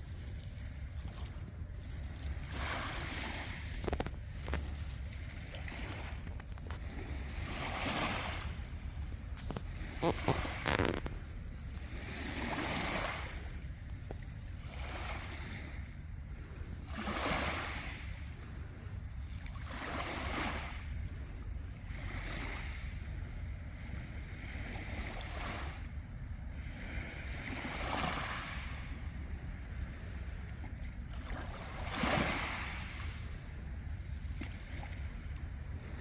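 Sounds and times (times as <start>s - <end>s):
waves washing over pebbles: 0.0s - 15.8s, 16.8s - 18.2s, 31.3s - 33.3s
wind rumble on microphone: 0.0s - 36.0s.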